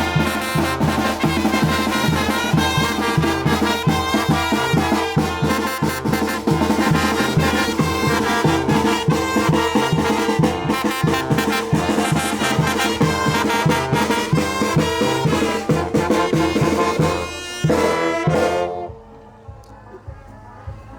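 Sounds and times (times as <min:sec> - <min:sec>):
brass band playing: 0:00.0 - 0:19.2.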